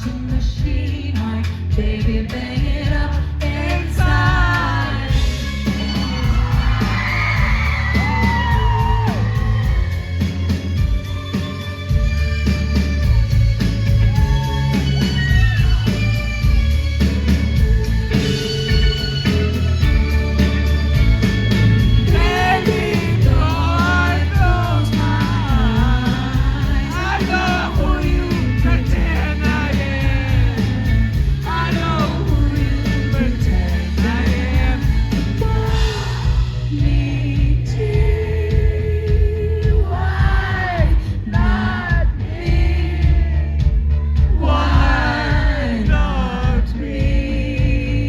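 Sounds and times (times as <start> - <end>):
woman singing: 0.0 - 5.4, 22.1 - 43.2, 44.4 - 48.0
live band playing pop-rock: 0.3 - 38.1.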